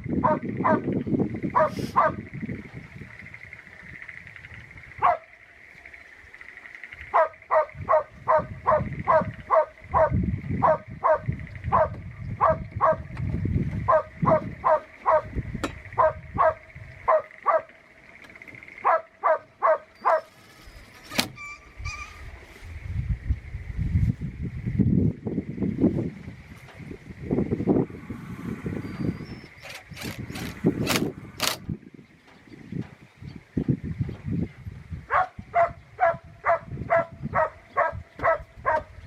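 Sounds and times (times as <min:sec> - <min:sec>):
low wind rumble: 0:00.0 - 0:39.0
dog barking: 0:00.2 - 0:00.8, 0:01.6 - 0:02.2, 0:05.0 - 0:05.3, 0:07.1 - 0:13.1, 0:13.9 - 0:15.3, 0:16.0 - 0:17.7, 0:18.8 - 0:20.3, 0:35.1 - 0:39.0.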